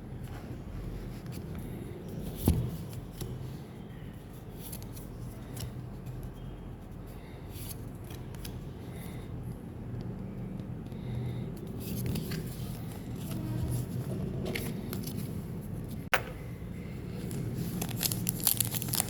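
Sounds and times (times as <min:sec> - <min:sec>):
foil wrappers crinkling: 0:17.2 - 0:19.0.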